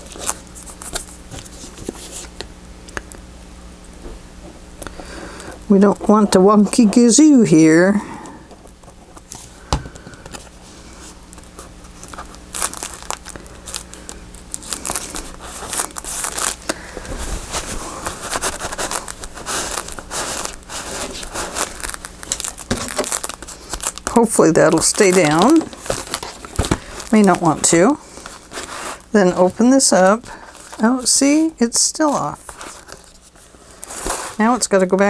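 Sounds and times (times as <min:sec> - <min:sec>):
paper rustling and crinkling: 0:00.0 - 0:02.5, 0:10.2 - 0:35.0.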